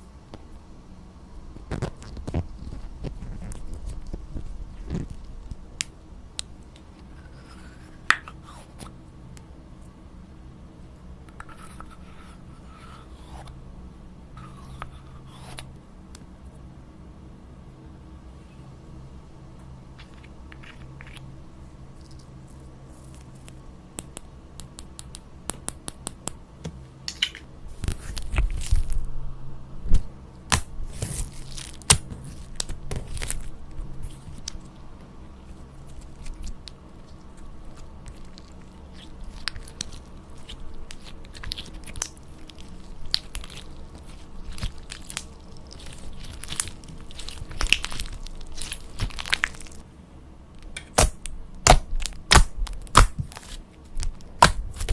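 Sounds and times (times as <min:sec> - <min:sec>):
slime crackling when squeezed: 0:38.0 - 0:49.8.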